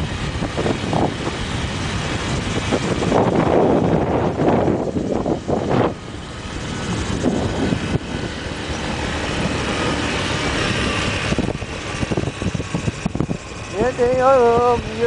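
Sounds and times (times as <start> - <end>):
motorcycle engine: 0.0 - 15.0
wind noise: 0.0 - 15.0.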